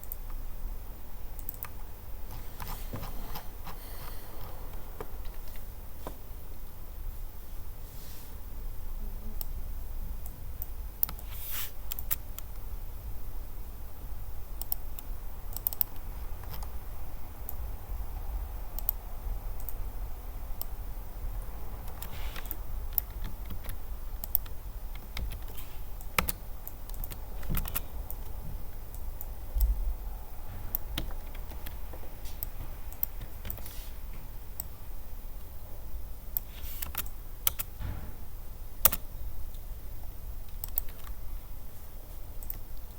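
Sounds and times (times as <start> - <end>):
steady low hum: 0.0 - 42.9
keyboard key clicks: 38.8 - 39.0.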